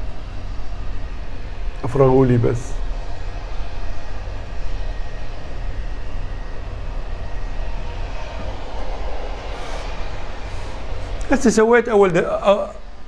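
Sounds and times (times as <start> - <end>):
even rushing noise: 0.0 - 13.0
steady low hum: 0.0 - 13.0.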